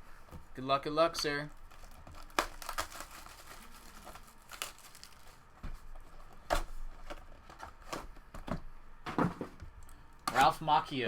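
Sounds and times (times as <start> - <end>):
packaging tearing and crinkling: 1.5 - 5.6.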